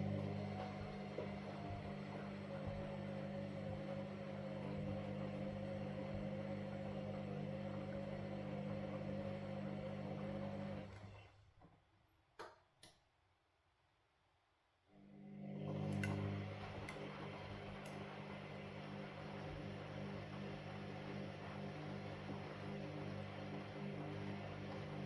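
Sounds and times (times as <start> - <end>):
washing machine drum humming: 0.0 - 11.0.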